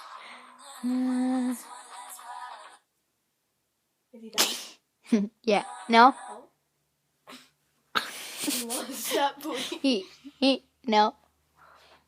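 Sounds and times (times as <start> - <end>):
pop music: 0.0 - 2.8.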